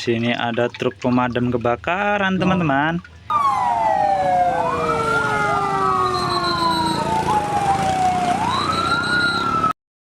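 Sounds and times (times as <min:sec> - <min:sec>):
fire truck siren wailing: 0:03.3 - 0:09.8.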